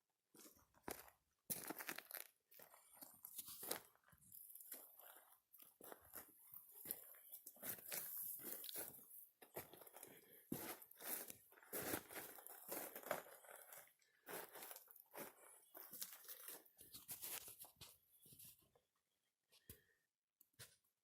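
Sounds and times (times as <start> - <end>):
faint crunching and rustling: 0.4 - 18.8.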